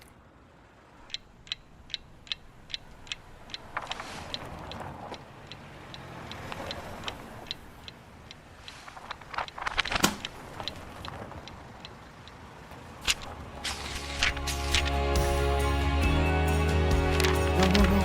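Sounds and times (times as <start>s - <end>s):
sharp regular ticks: 1.0s - 15.0s.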